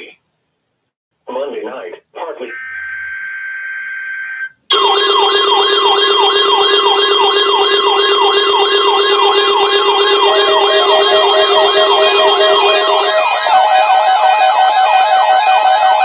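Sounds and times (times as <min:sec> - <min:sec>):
electronic sirens yelping and warbling: 0:02.5 - 0:16.0
rapid pulsing beep: 0:04.7 - 0:16.0.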